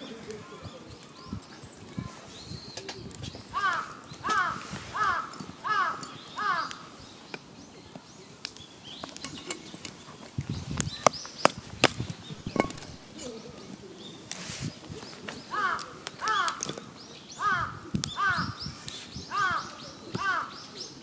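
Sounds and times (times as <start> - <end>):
crow cawing: 3.5 - 7.0, 15.5 - 16.7, 17.4 - 18.6, 19.3 - 20.6
sharp clicks and knocks: 11.8 - 13.1.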